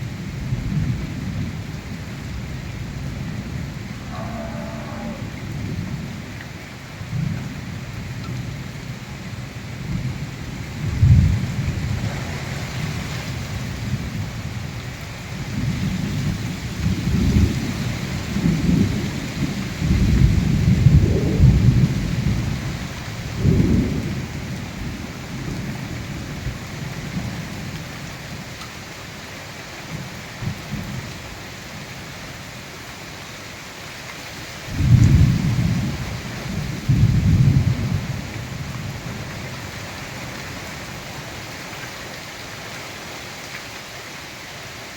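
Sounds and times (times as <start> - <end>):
heavy rain hissing: 0.0 - 29.2.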